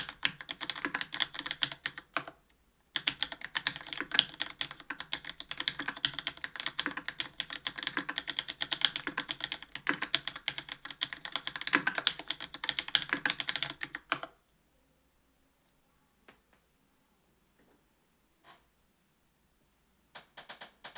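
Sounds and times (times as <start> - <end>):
fast typing on mechanical keyboard: 0.0 - 2.4, 3.0 - 14.3, 20.2 - 20.9.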